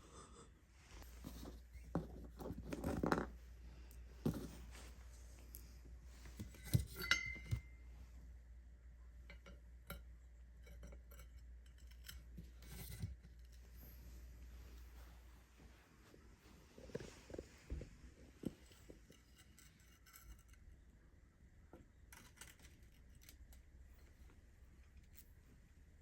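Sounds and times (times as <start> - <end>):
metal parts and tools clinking: 6.5 - 7.8
short metallic ring: 6.9 - 7.9.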